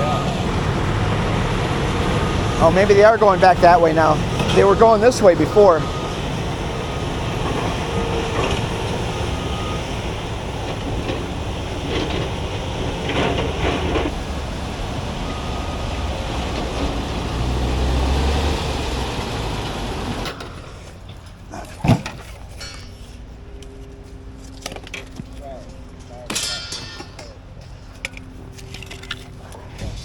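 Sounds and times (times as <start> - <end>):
diesel engine rumble: 0.0 - 30.0
debris clanking and rattling: 7.4 - 14.2, 20.2 - 23.3, 26.3 - 29.4.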